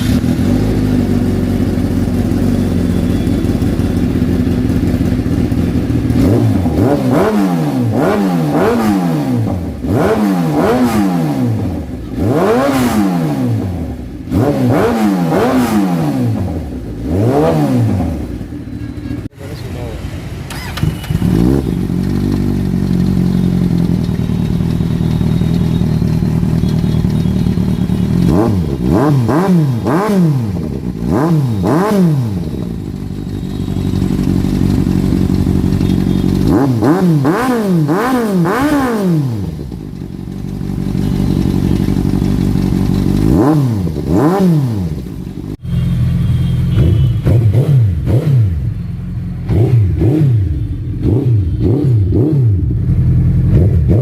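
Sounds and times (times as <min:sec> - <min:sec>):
motorcycle engine idling: 0:00.0 - 0:08.0, 0:16.4 - 0:54.0.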